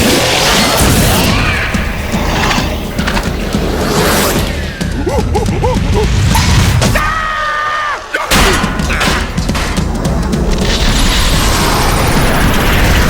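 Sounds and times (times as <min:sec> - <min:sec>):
cartoon music: 0:04.9 - 0:06.7
thumps and crashes: 0:08.3 - 0:13.0.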